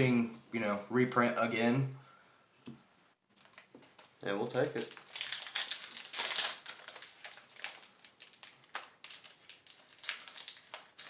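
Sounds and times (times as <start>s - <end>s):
foil wrapper crinkling: 3.3s - 11.0s.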